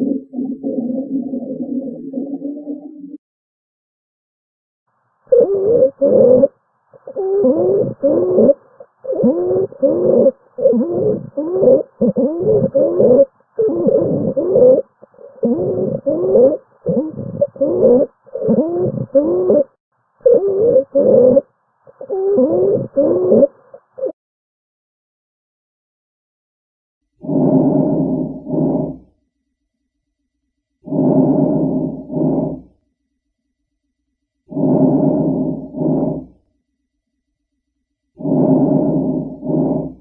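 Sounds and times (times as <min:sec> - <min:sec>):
musical lung sounds: 0:05.3 - 0:21.4, 0:30.8 - 0:32.8, 0:34.5 - 0:36.4, 0:38.2 - 0:40.0.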